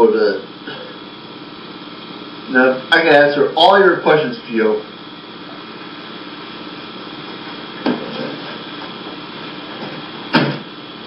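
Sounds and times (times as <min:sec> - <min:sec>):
steady hum: 0:00.0 - 0:11.0
sharp knocks: 0:10.3 - 0:10.7.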